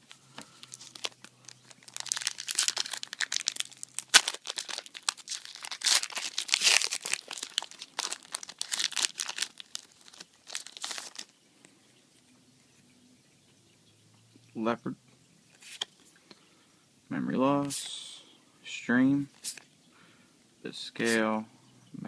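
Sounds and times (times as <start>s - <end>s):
foil wrapper crinkling and tearing: 0.0s - 11.3s.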